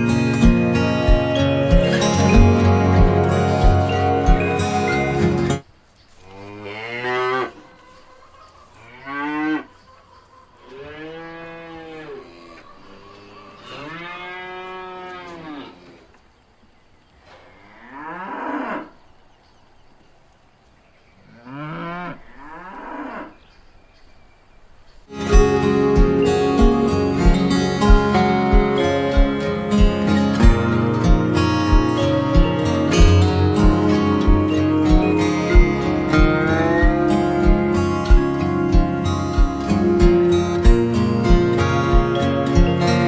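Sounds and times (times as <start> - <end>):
cattle mooing: 10.7 - 16.0, 21.4 - 23.4, 31.9 - 41.8.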